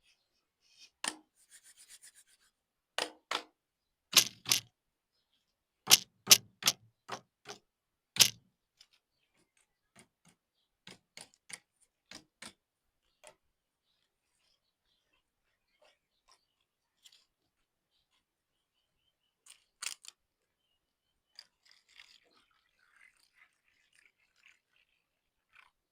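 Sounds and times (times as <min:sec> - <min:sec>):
hard objects tapping and clicking: 0:04.2 - 0:04.7, 0:05.9 - 0:07.6, 0:08.2 - 0:08.4.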